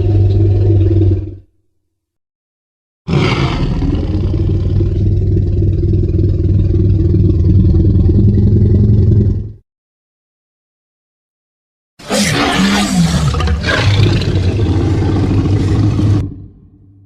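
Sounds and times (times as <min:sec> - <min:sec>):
dinosaur roar: 0:00.0 - 0:01.5, 0:03.1 - 0:09.6, 0:12.0 - 0:17.0.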